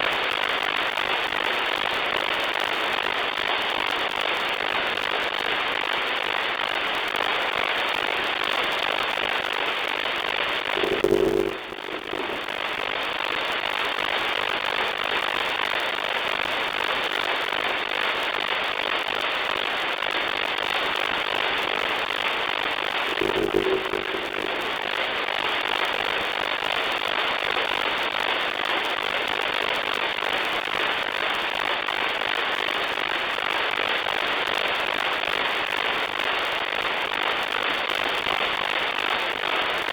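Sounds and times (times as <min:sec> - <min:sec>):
shortwave radio static hiss: 0:10.7 - 0:13.1, 0:22.9 - 0:25.4
short low tone: 0:10.8 - 0:12.8, 0:23.1 - 0:25.0.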